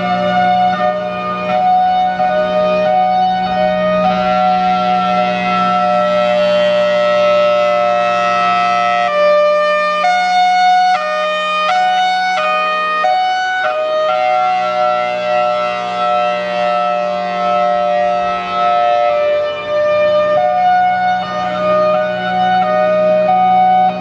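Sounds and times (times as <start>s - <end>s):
hi-lo warning siren: 0.0s - 24.0s.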